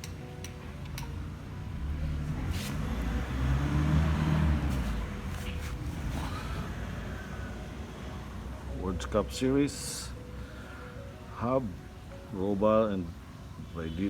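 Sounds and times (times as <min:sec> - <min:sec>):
vehicle passing by: 0:01.5 - 0:09.2.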